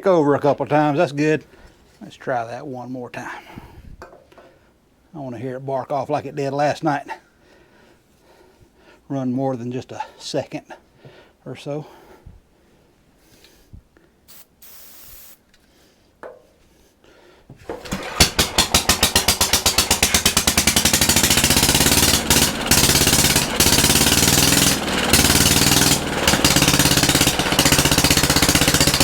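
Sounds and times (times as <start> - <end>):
small engine running loud: 17.7 - 29.0.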